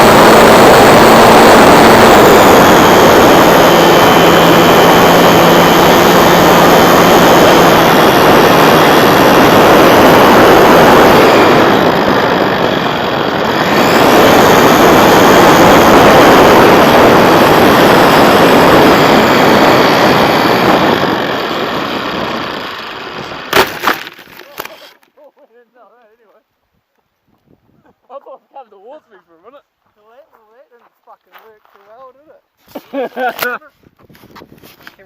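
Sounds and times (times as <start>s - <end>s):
wind rush: 0.0s - 23.5s
model plane propeller: 0.0s - 25.1s.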